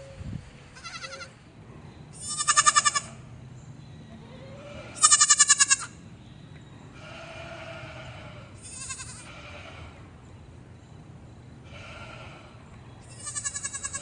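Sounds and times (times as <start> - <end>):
goats bleating: 2.2 - 3.2, 4.6 - 6.0, 7.0 - 9.8, 13.1 - 14.0.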